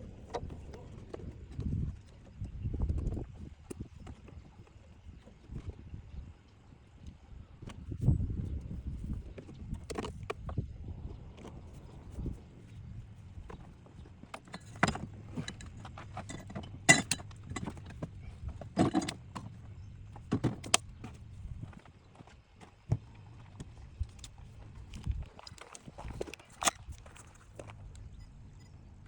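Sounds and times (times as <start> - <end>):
tools and parts clicking and rattling: 13.5 - 21.8, 23.4 - 28.8.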